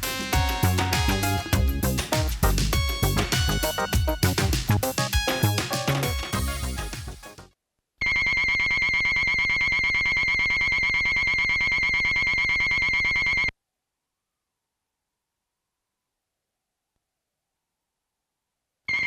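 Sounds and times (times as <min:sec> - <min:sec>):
music: 0:00.0 - 0:07.5.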